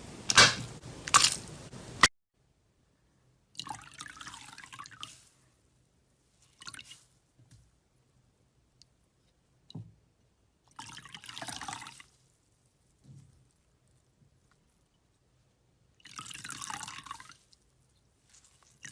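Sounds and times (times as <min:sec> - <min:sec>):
slime squelching by hand: 0:10.8 - 0:18.9.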